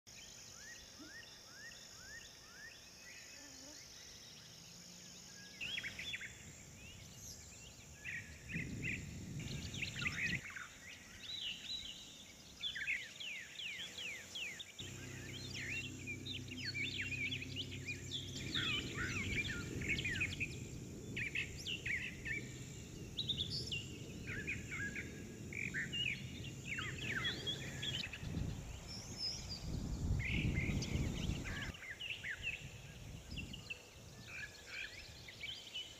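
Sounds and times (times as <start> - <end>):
wild birds chirping: 0.1 - 35.9
low background rumble: 6.2 - 10.5, 14.8 - 31.7
steady hum: 13.6 - 31.7.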